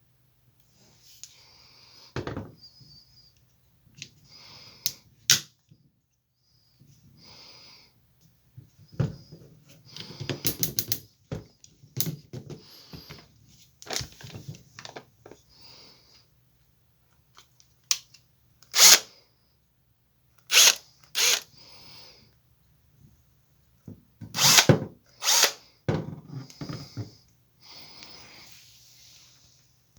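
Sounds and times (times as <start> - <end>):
cordless drill bursts: 18.7 - 19.0, 20.5 - 21.5, 24.4 - 25.6.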